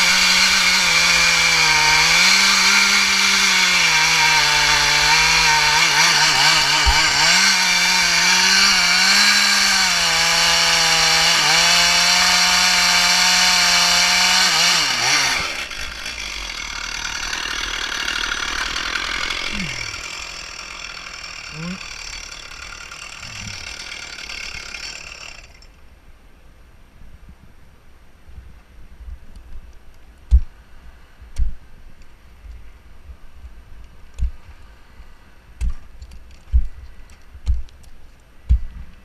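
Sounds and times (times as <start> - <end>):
chainsaw cutting at high revs: 0.0 - 25.7.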